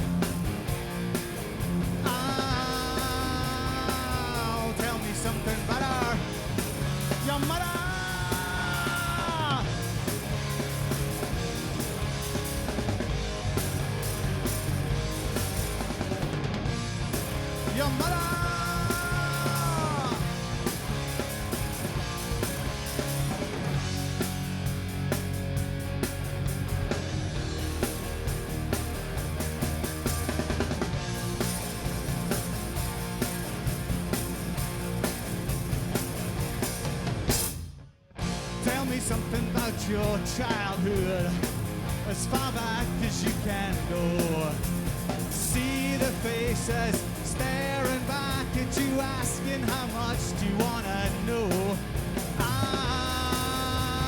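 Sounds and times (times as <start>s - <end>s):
bass guitar: 0.0s - 54.0s
drum kit: 0.0s - 54.0s
electric guitars: 0.0s - 54.0s
live rock band playing: 0.0s - 54.0s.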